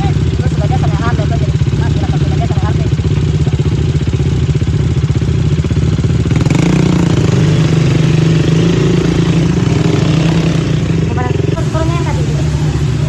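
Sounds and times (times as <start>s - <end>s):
quad bike engine running: 0.0s - 13.0s.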